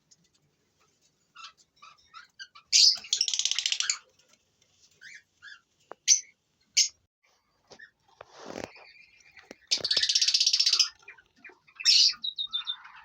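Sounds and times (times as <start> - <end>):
small birds chirping: 0.1 - 13.0
rapid chattering bird trill: 1.4 - 4.1, 9.6 - 13.0.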